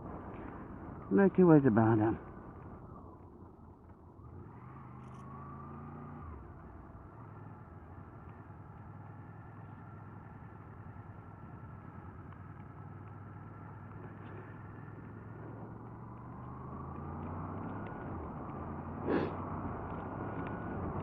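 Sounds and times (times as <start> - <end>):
motorcycle engine running: 6.4 - 21.0.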